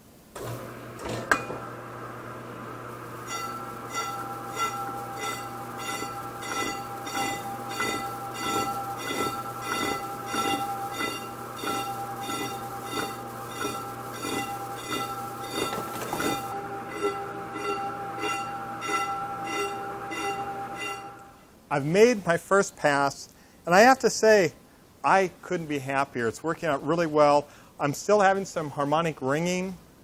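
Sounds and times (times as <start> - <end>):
metal lathe cutting: 0.4 - 21.3
high metallic ringing: 3.1 - 21.4.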